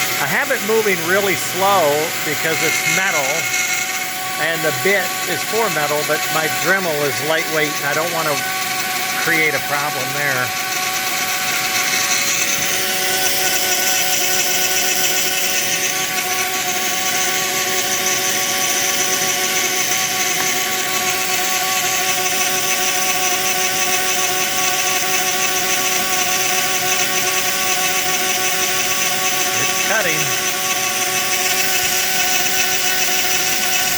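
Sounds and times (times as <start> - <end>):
bit cutting metal hiss: 0.0 - 19.7, 27.5 - 33.8
rotary tool whining: 0.0 - 33.9.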